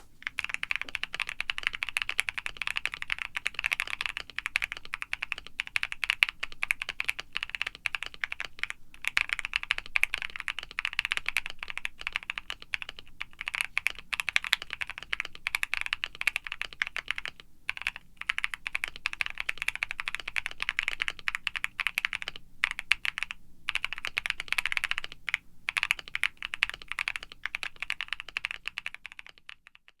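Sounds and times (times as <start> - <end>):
fast typing on a mechanical keyboard: 0.2 - 30.0.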